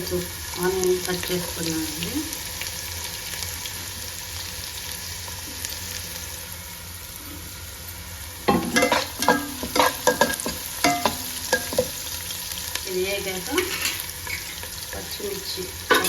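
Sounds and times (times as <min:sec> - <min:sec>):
onion sizzling in oil: 0:00.0 - 0:16.0
spoon scraping pan: 0:08.5 - 0:12.0, 0:13.5 - 0:15.2.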